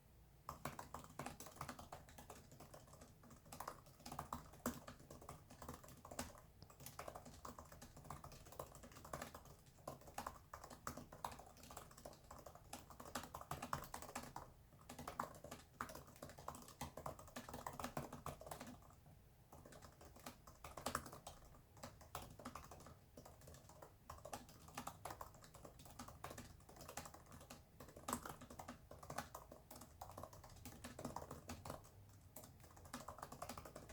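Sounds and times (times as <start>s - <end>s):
fast keyboard typing: 0.4s - 33.9s.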